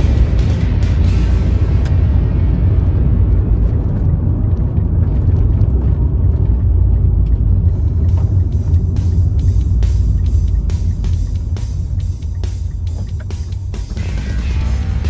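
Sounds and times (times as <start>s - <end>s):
moving car rumble: 0.0s - 15.0s.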